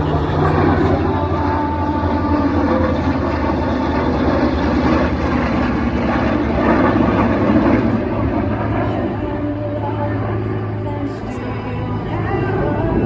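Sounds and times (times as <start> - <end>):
propeller aircraft engine drone: 0.0 - 13.0.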